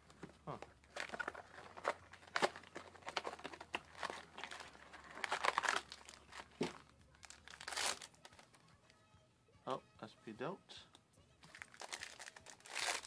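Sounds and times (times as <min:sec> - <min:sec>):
foil wrappers crinkling and tearing: 0:00.5 - 0:08.5, 0:11.5 - 0:13.0.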